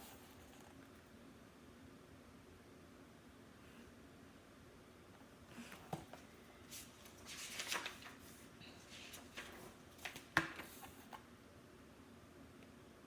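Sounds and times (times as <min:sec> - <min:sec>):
papery rustle: 0:06.1 - 0:10.8.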